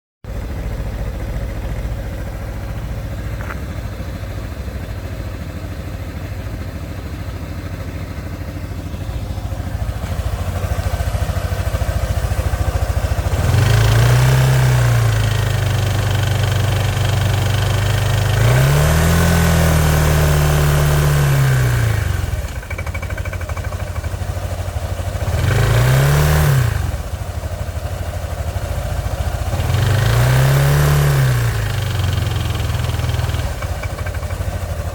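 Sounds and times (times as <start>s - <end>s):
scooter engine idling and revving: 0.2s - 34.9s
metallic knocking in engine: 22.1s - 25.2s, 31.9s - 34.9s.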